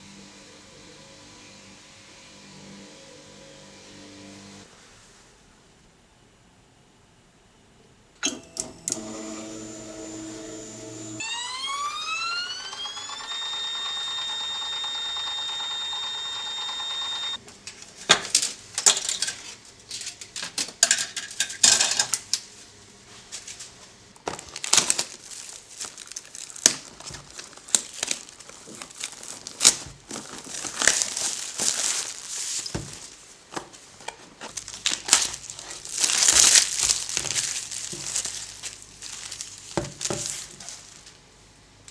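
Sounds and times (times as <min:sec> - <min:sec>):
stepper motor whining: 0:08.2 - 0:17.4
plastic filament crinkling and clicking: 0:23.4 - 0:41.2.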